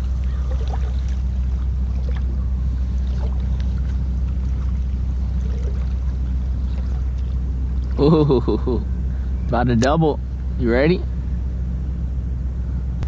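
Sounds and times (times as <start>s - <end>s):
faint water sounds: 0.0s - 11.4s
steady low rumble: 0.0s - 13.0s.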